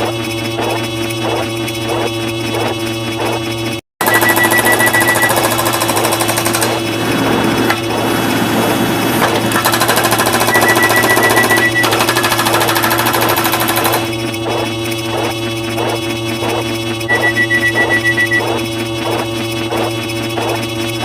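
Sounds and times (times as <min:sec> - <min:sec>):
high steady beep: 0:04.0 - 0:05.5, 0:10.4 - 0:12.0, 0:17.1 - 0:18.6
rapid layered sound effects rattle: 0:05.2 - 0:07.3, 0:09.6 - 0:17.0.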